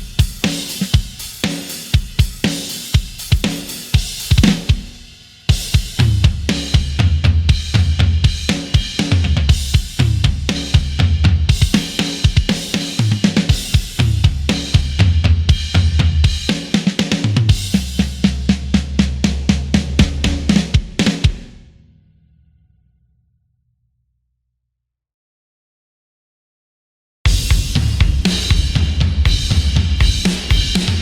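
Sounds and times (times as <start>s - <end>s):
hard rock drum groove: 0.0s - 21.8s, 27.3s - 31.0s
low bass line: 27.3s - 31.0s.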